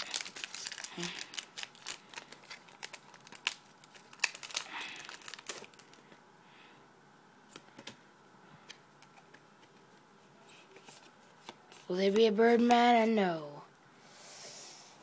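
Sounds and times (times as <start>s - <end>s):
foil wrapper crinkling: 0.0s - 6.0s.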